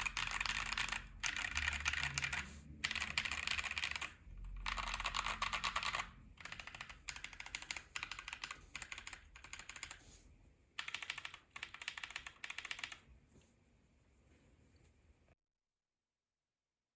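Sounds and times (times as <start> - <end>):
mechanical keyboard typing: 0.0 - 10.0, 10.8 - 13.0.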